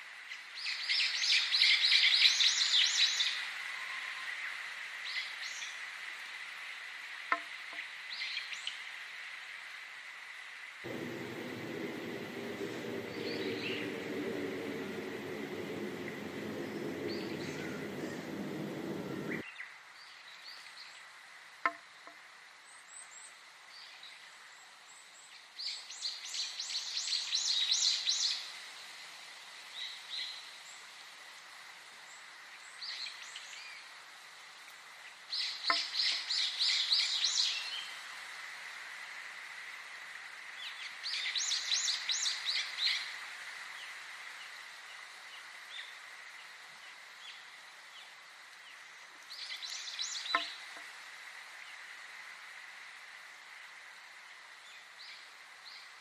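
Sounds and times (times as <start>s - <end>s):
low rushing noise: 10.9s - 19.4s
songbird trilling: 10.9s - 19.4s.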